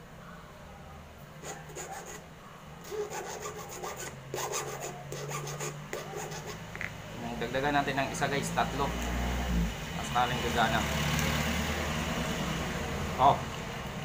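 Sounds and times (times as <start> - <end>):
filing metal key by hand: 2.8 - 6.6.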